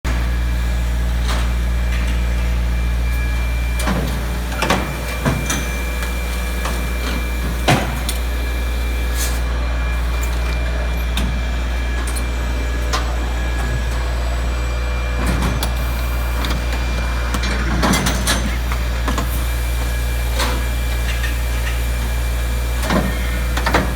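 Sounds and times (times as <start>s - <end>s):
industrial machinery humming: 0.1s - 23.9s.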